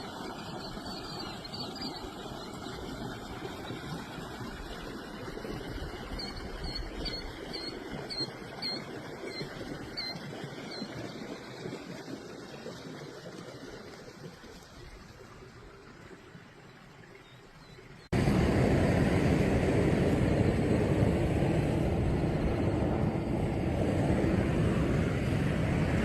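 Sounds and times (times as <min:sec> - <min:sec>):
wind on microphone: 0:18.2 - 0:26.0.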